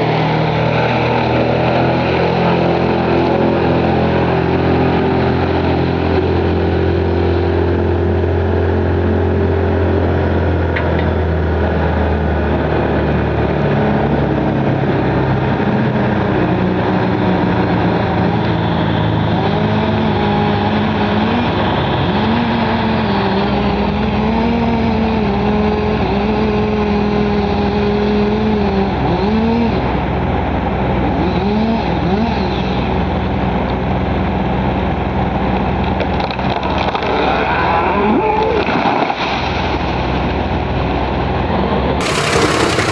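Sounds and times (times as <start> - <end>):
wood chipper engine running: 42.0 - 42.9.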